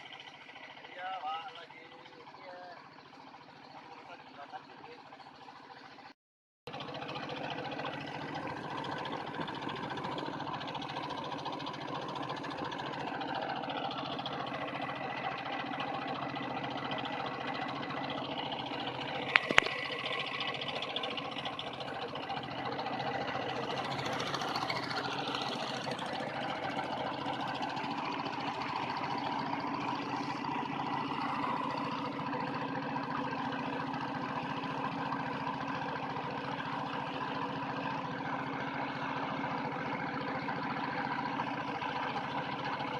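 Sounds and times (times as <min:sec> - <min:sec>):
engine running steadily: 0:00.0 - 0:42.9.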